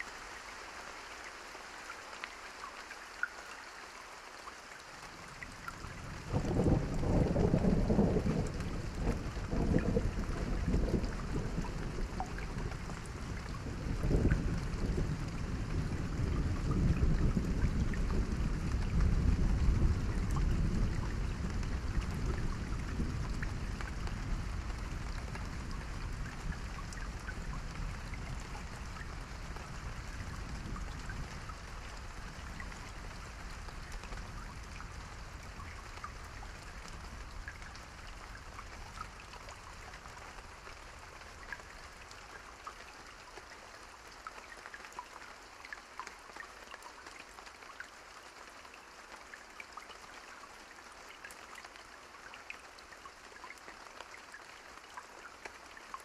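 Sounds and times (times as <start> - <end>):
steady rain falling: 0.0 - 56.0
raindrop ticks: 5.1 - 47.9
thunder rumble: 6.0 - 31.4.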